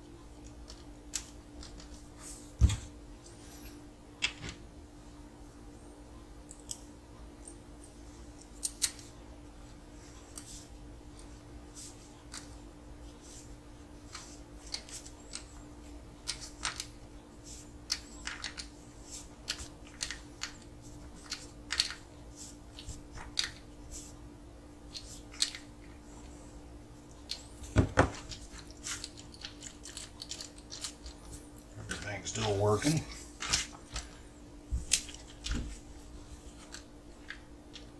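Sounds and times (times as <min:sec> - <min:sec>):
faint steady hum: 0:00.0 - 0:37.9.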